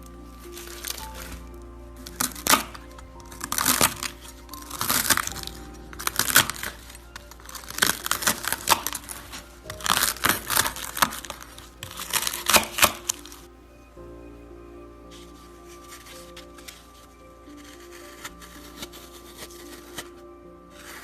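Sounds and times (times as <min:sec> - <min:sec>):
slime crackling and popping: 0:00.0 - 0:13.5
background music: 0:00.0 - 0:21.0.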